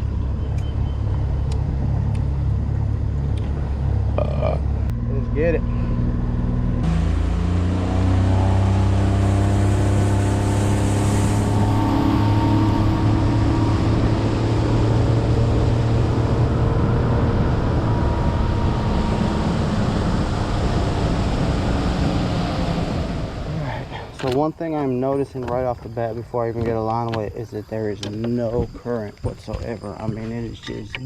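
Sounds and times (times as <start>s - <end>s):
outboard motor running: 0.0s - 31.0s
wind and water rushing: 6.8s - 31.0s.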